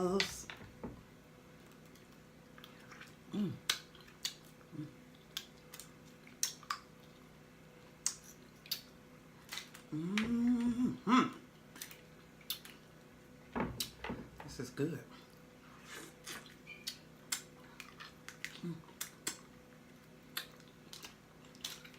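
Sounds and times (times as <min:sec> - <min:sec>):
wet lip smacks and mouth clicks: 0:01.8 - 0:07.3, 0:08.0 - 0:09.9, 0:11.7 - 0:12.8, 0:16.1 - 0:19.6, 0:20.3 - 0:21.9
person humming: 0:03.3 - 0:03.7, 0:04.7 - 0:05.0, 0:09.9 - 0:11.4, 0:18.6 - 0:18.9.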